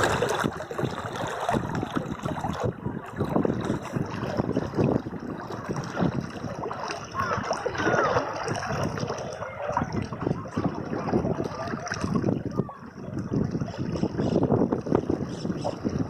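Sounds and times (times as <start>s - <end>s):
river water rushing over rocks: 0.0s - 12.3s.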